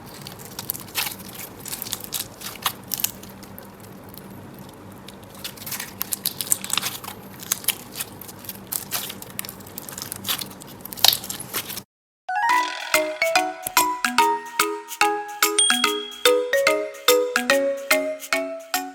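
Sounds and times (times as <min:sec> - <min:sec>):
hands squishing slime: 0:00.0 - 0:11.8.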